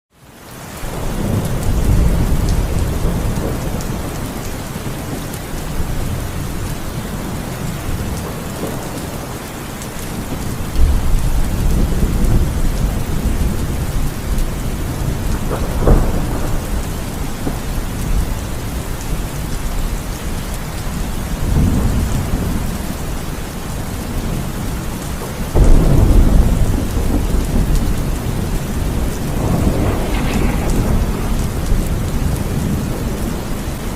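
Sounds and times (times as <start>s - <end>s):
heavy rain: 0.1s - 33.9s
thunder rumbling: 0.9s - 9.4s, 10.1s - 20.4s, 21.0s - 33.9s
sharp thunder crack: 25.6s - 33.5s.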